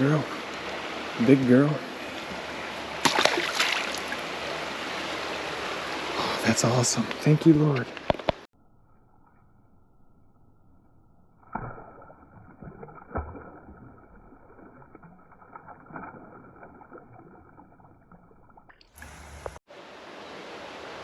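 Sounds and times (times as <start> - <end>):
creek water sloshing: 0.2 - 7.0, 11.6 - 20.9.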